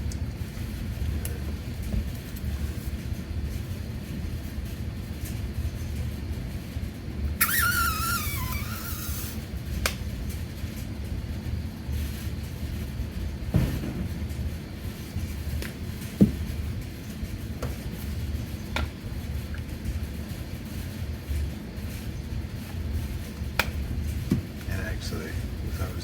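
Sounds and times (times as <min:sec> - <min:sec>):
steady low rumble: 0:00.0 - 0:07.4, 0:09.5 - 0:26.0
squeeze bottle squealing: 0:07.4 - 0:09.5.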